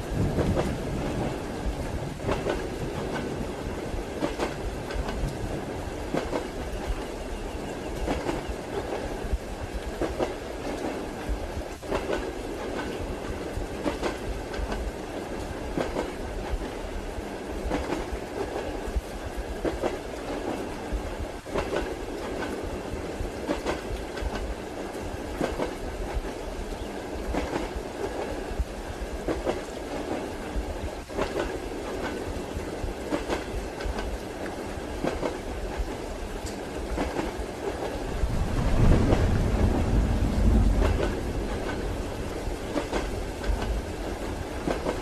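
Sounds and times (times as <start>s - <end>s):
railway carriage rumble: 0.0s - 45.0s
train wheels clacking over rail joints: 0.2s - 7.1s, 7.9s - 14.9s, 21.4s - 22.6s, 23.3s - 24.6s, 31.0s - 45.0s.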